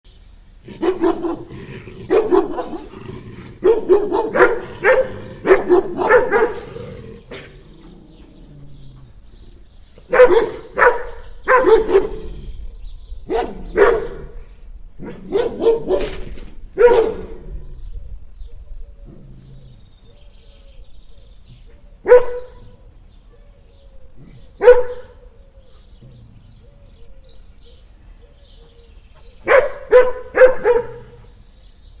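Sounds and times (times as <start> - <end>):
dogs barking: 0.7 - 7.5, 10.0 - 12.4, 13.2 - 14.4, 15.0 - 17.6, 22.0 - 23.4, 24.4 - 26.2, 28.6 - 31.3.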